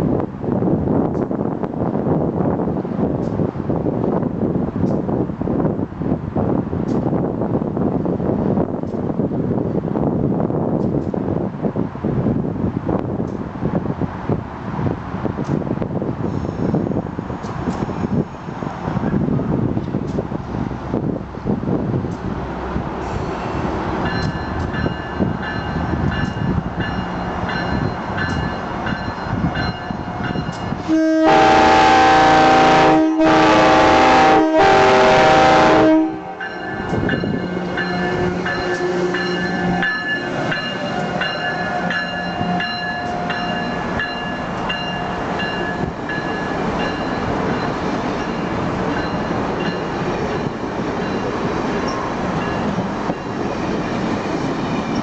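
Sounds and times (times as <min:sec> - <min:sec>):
passenger train running past: 0:00.0 - 0:55.0
train horn blasts: 0:30.8 - 0:40.3.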